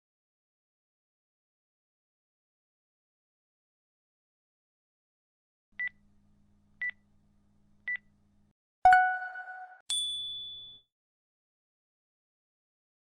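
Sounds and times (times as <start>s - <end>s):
high chime ringing: 8.9s - 10.9s.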